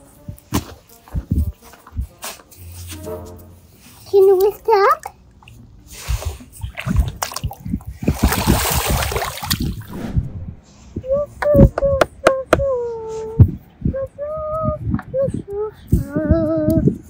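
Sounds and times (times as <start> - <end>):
water splashing: 6.6 - 10.5.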